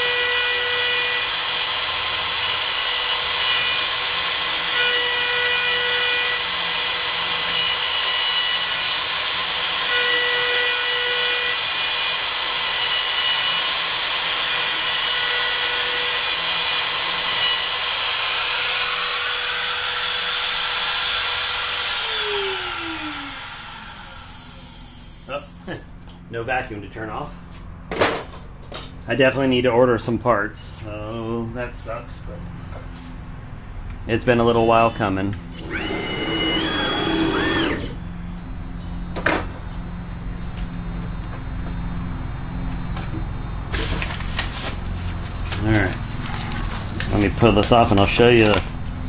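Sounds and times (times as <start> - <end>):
router whine: 0.0 - 26.0, 35.4 - 38.5
router spinning down: 11.5 - 25.8, 35.5 - 38.1
cutting noise: 35.5 - 38.1, 43.8 - 49.0.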